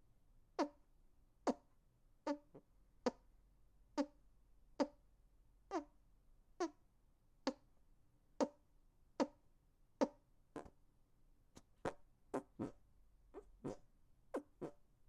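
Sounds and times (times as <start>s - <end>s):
fake fart sounds with hands: 10.0s - 10.8s, 11.8s - 14.8s.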